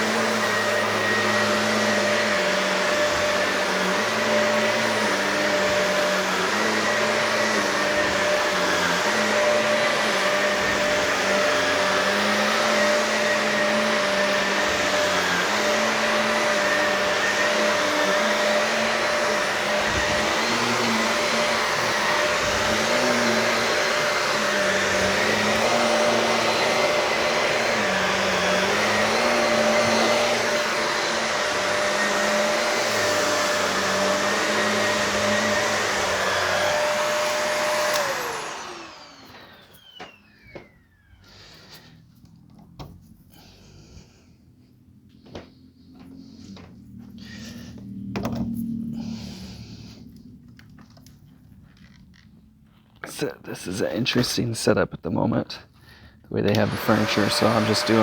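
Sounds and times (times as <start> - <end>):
vacuum motor winding down: 0.0 - 42.0, 56.4 - 58.0
vacuum cleaner running over carpet: 0.0 - 44.3, 45.1 - 52.0, 56.3 - 58.0.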